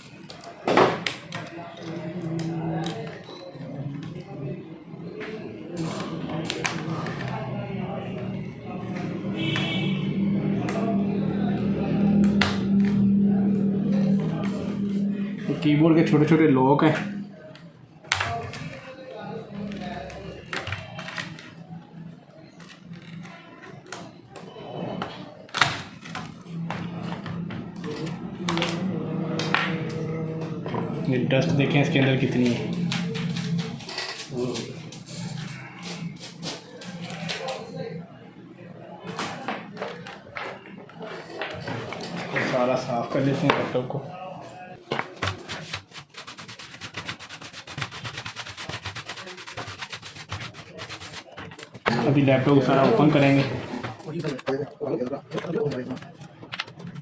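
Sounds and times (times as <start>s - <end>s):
rapid scrubbing strokes: 45.3s - 51.8s.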